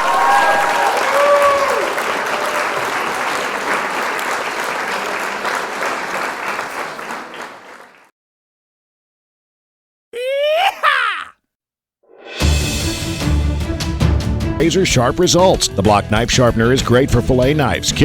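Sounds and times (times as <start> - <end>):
applause-like rush of noise: 0.0 - 8.1.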